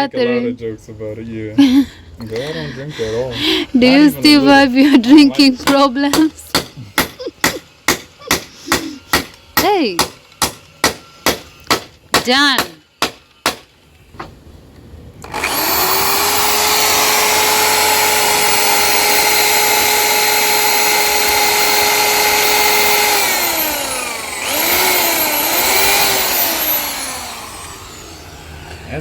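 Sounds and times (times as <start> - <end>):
power tool motor whine: 15.2 - 29.0.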